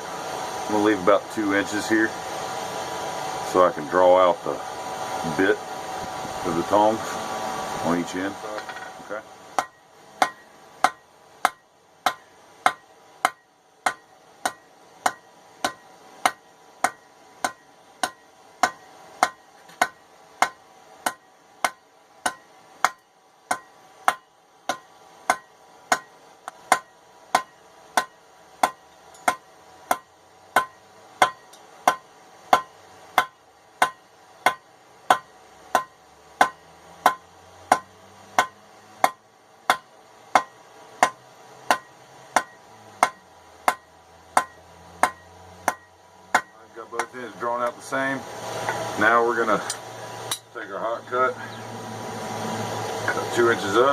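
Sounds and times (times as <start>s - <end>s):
hammer striking steel on anvil: 9.6s - 47.8s, 49.6s - 50.6s.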